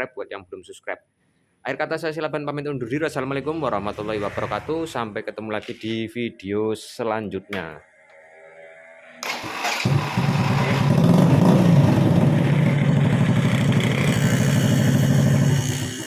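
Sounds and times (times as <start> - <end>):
motorcycle engine starting: 9.2 - 16.0.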